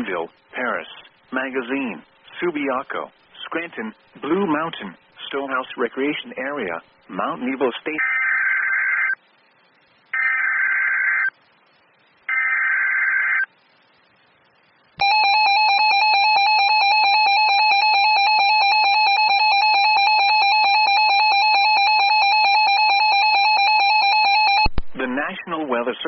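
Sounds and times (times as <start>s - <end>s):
steady warning alarm tone: 15.0s - 24.7s.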